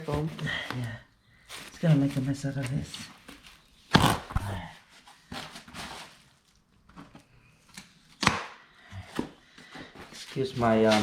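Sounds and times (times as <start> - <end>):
styrofoam squeaking and rustling: 1.4 - 4.6, 5.2 - 6.5, 10.2 - 11.0
styrofoam snapping: 3.9 - 4.6.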